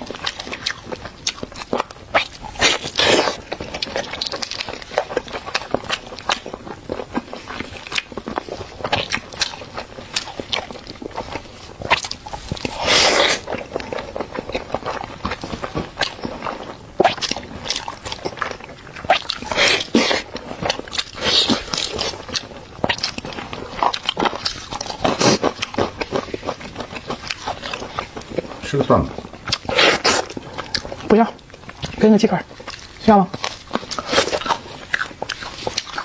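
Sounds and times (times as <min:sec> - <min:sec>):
person eating and crunching: 0:00.0 - 0:36.0.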